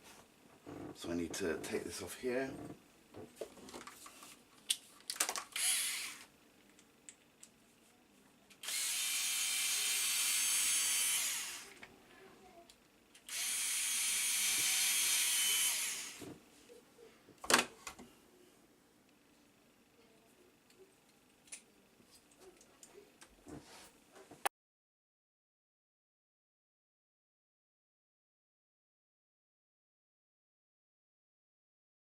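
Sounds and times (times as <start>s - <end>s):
power drill running: 5.5s - 6.3s, 8.6s - 11.8s, 13.3s - 16.2s.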